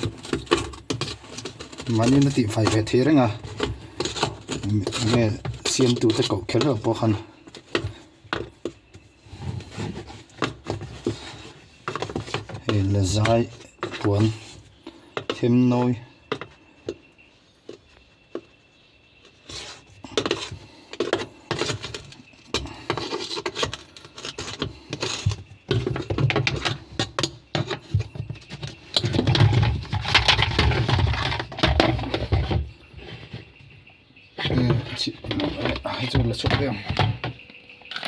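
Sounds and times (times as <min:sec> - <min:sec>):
scrubbing: 0:00.0 - 0:17.0
clatter of hard objects: 0:00.0 - 0:33.8, 0:34.4 - 0:38.0.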